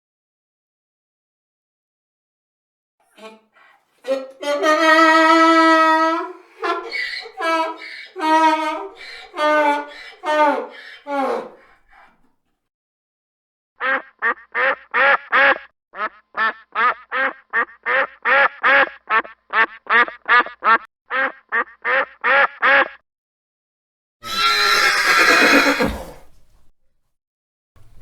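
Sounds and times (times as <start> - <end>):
duck quacking: 3.1 - 12.1, 13.8 - 23.0
horse whinnying: 4.0 - 12.2, 24.2 - 26.6.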